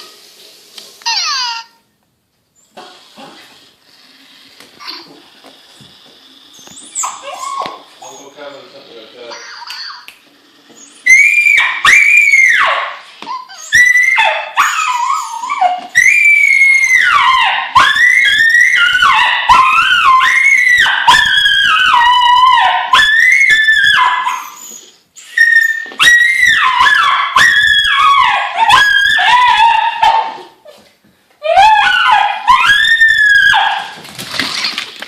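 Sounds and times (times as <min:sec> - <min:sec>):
dog screaming high-pitched cries: 0:01.0 - 0:01.9, 0:06.5 - 0:10.1, 0:10.8 - 0:30.7, 0:31.4 - 0:35.0.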